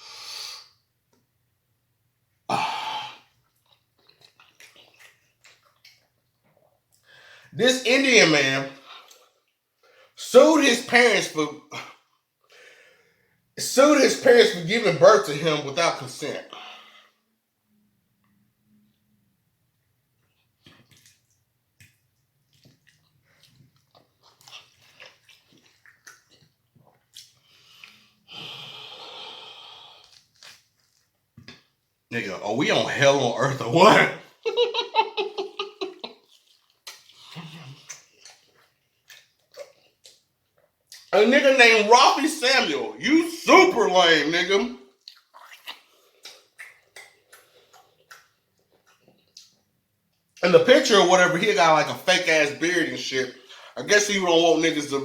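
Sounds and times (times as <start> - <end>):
man exhaling breathily: 2.5 - 3.2
man rasping throat sound: 2.5 - 3.3
chewing and smacking food: 3.3 - 7.1, 19.8 - 28.3, 30.0 - 31.9, 34.5 - 41.2, 44.9 - 50.4
mouth smacking clicks: 45.1 - 48.3.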